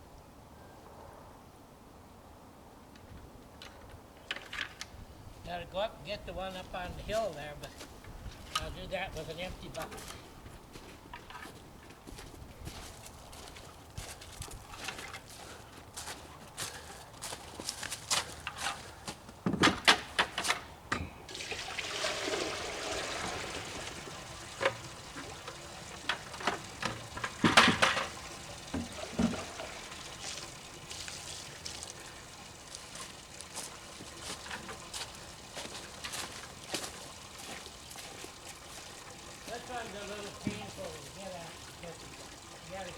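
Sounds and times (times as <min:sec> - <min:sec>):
buckets knocking and clunking: 0:19.5 - 0:42.9
sap pouring from bucket: 0:21.3 - 0:42.9.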